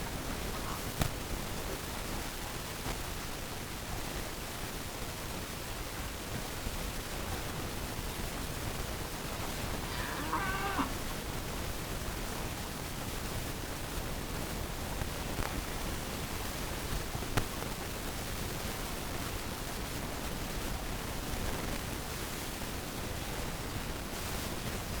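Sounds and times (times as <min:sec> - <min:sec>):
background hiss: 0:00.0 - 0:25.0
chicken call: 0:09.7 - 0:11.1.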